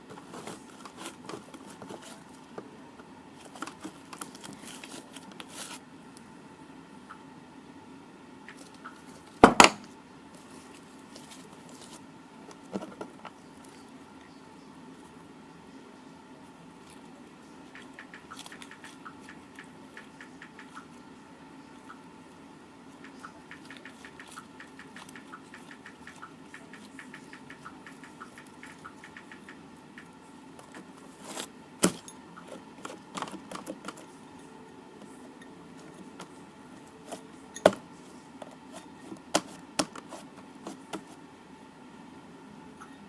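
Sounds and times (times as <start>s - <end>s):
small hard objects clicking: 17.7s - 20.9s.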